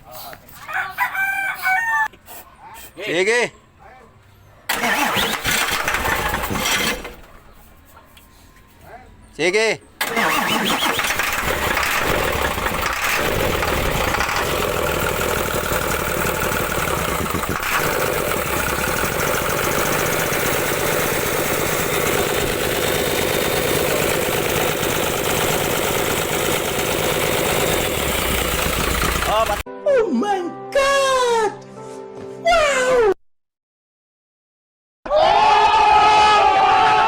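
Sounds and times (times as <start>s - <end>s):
diesel engine cranking: 4.7s - 7.3s, 10.0s - 29.6s.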